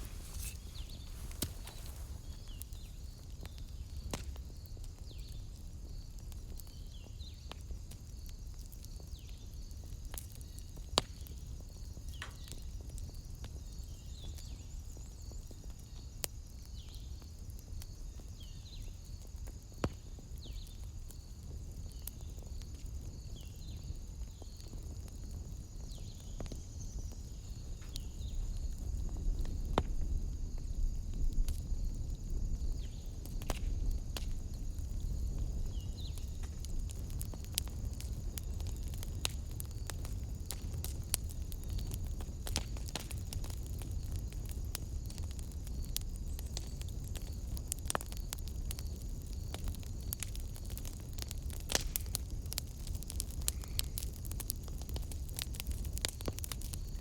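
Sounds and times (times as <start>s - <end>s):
insects chirping: 0.0s - 6.1s
fire popping: 0.0s - 57.0s
wood fire crackling: 0.0s - 57.0s.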